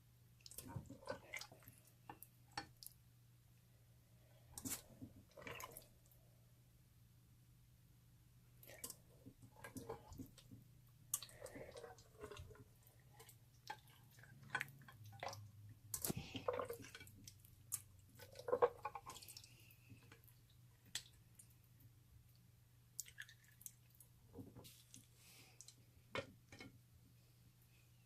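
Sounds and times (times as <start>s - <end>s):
slime squelching: 4.5s - 6.1s, 8.6s - 21.7s.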